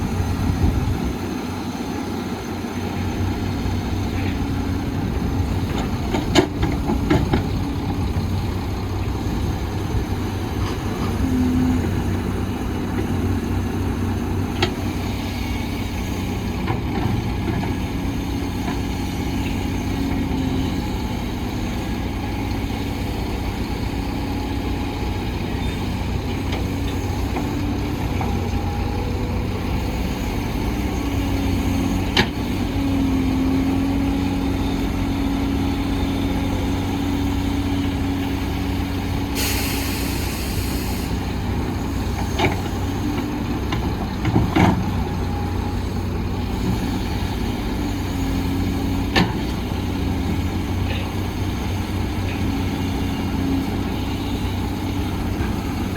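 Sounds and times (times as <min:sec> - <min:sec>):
diesel machinery running: 0:00.0 - 0:55.9
air hiss release: 0:39.4 - 0:41.2.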